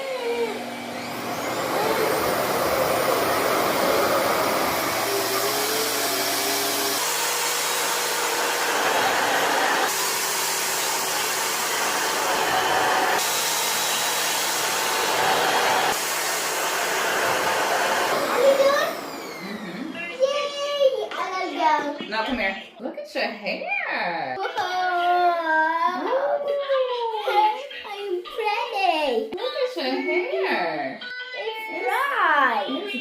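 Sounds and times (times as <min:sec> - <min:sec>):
hair dryer blower humming: 0:00.0 - 0:20.0.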